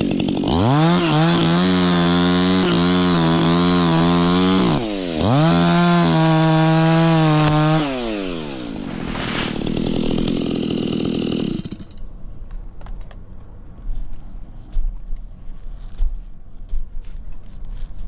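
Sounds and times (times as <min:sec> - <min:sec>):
chainsaw revving and idling: 0:00.0 - 0:12.0.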